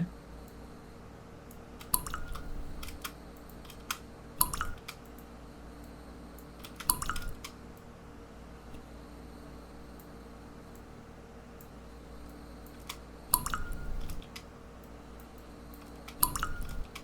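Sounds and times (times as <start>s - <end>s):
water drops plinking: 2.0s - 2.6s, 4.4s - 4.8s, 6.9s - 7.4s, 13.4s - 14.2s, 16.2s - 16.9s.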